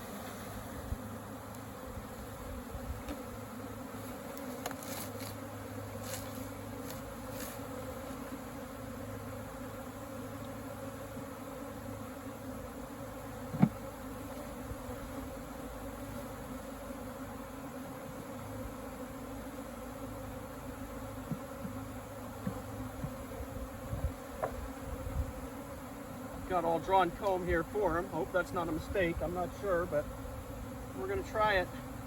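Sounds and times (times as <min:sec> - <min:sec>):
bee swarm buzzing: 0:00.0 - 0:32.0.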